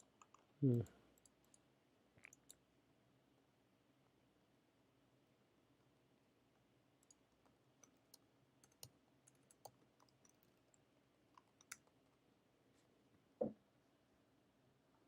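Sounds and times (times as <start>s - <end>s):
keyboard typing clicks: 7.8s - 10.6s.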